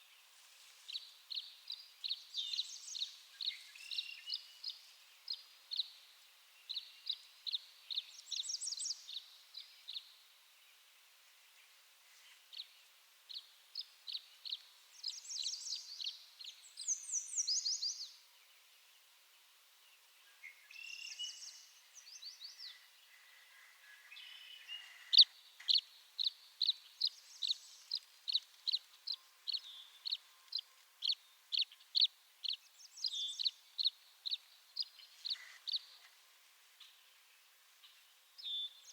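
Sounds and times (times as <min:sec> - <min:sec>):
swallows chirping: 0:24.2 - 0:36.1.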